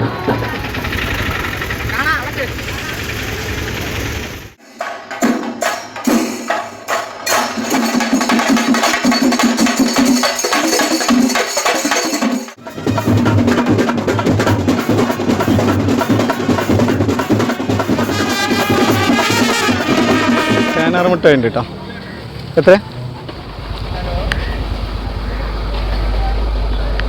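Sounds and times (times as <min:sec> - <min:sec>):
fast drum music: 0:00.0 - 0:21.2.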